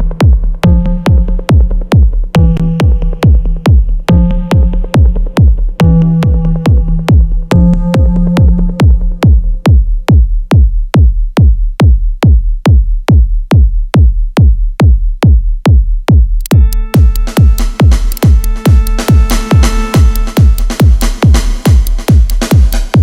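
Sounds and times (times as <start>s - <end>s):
kick drum beat: 0.0s - 23.0s
held bass note: 2.4s - 5.1s, 5.8s - 9.6s, 16.5s - 21.0s.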